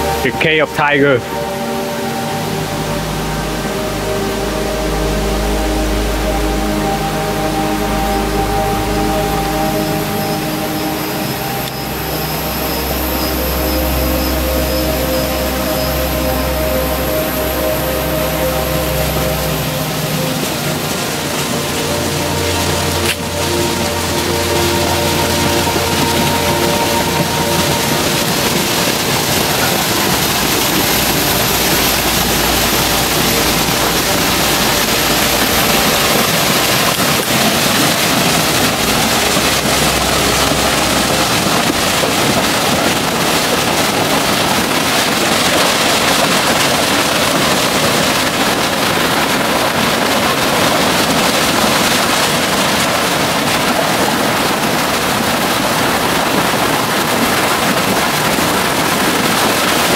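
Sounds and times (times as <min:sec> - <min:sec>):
low rumble: 0:00.0 - 0:59.8
waterfall rushing: 0:00.0 - 0:59.9.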